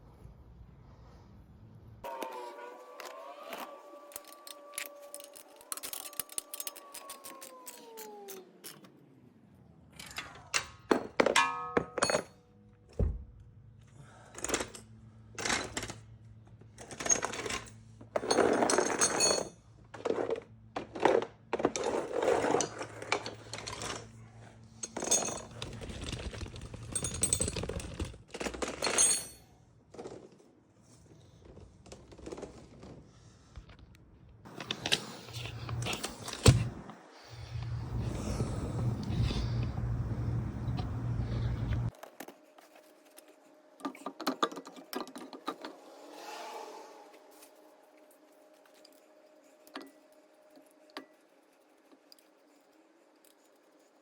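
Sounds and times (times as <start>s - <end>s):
metal tools knocking and clinking: 10.6s - 12.4s
ringing metal clang: 11.2s - 12.4s
steady low hum: 34.6s - 41.9s.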